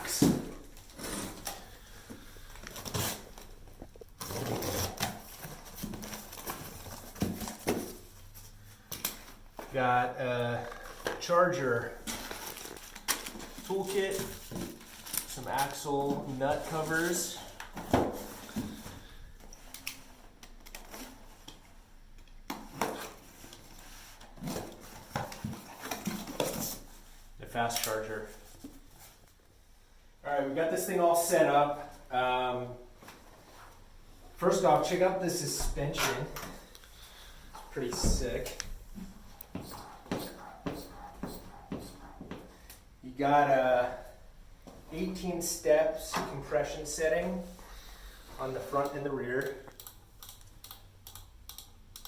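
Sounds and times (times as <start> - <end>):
packaging rustling: 10.6 - 17.7.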